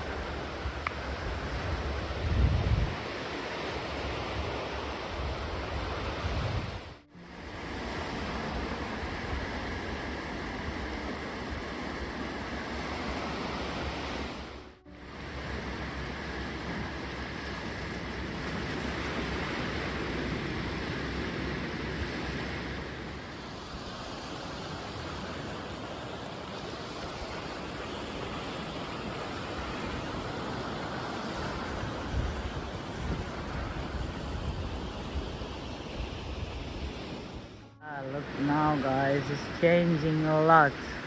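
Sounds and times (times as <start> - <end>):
sea waves washing on shore: 0.0 - 41.0.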